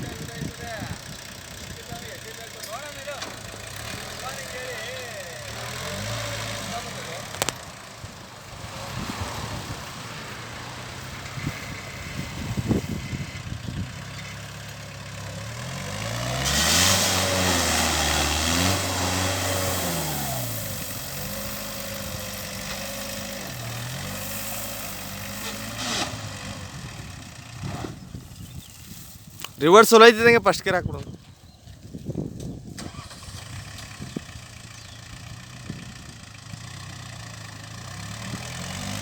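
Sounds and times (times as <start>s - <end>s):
concrete mixer engine running: 17.2s - 25.5s.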